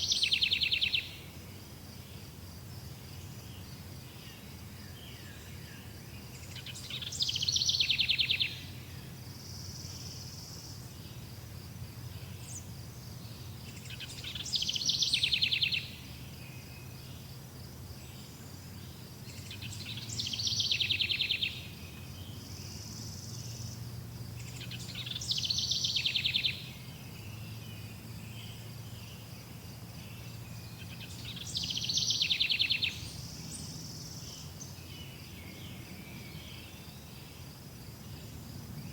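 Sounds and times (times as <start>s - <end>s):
songbird trilling: 0.0s - 1.2s, 6.3s - 8.7s, 13.7s - 16.9s, 19.3s - 22.6s, 24.4s - 27.6s, 30.2s - 36.8s
insects chirring: 0.0s - 38.9s.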